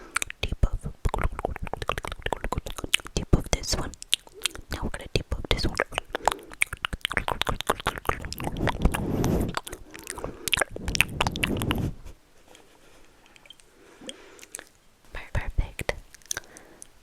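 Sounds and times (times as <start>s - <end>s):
wet mouth clicks and smacks: 0.1s - 11.9s, 13.2s - 14.8s, 15.7s - 17.0s
breathy puffs: 5.9s - 14.7s, 16.3s - 17.0s.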